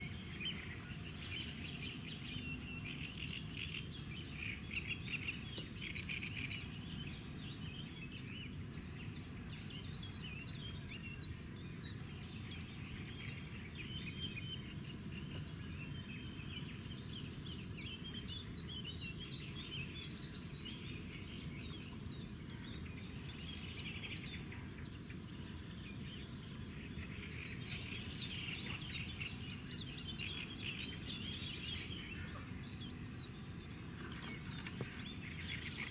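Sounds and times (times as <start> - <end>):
small birds chirping: 0.0 - 35.9.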